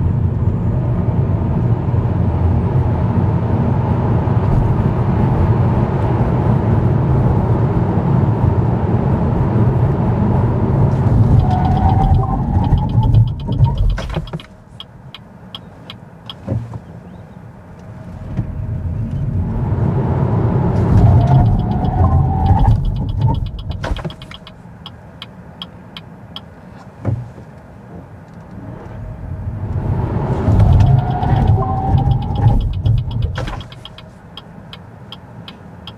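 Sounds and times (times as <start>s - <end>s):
tyre and road rumble: 10.4s - 15.0s, 17.8s - 25.0s, 26.5s - 34.9s
low hum: 10.6s - 14.4s, 18.6s - 24.6s, 29.0s - 34.1s
light regular clicks: 11.3s - 16.4s, 21.0s - 26.5s, 30.6s - 35.9s.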